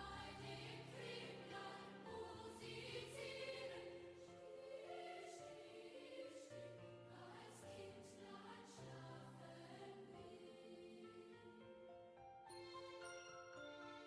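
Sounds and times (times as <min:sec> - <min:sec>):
choir singing held notes: 0:00.0 - 0:11.4.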